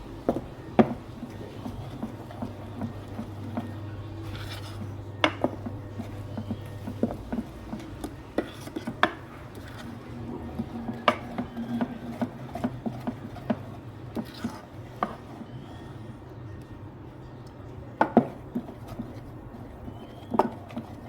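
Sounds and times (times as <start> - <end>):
steady low hum: 0.0 - 17.9.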